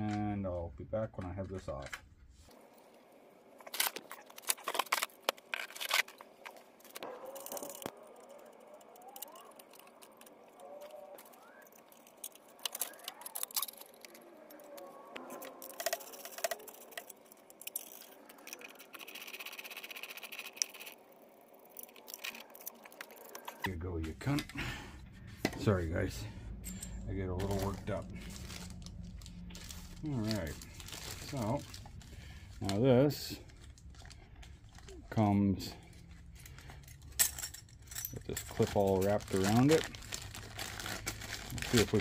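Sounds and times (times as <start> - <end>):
hand tools clicking and clinking: 3.7 - 24.8, 33.5 - 39.8.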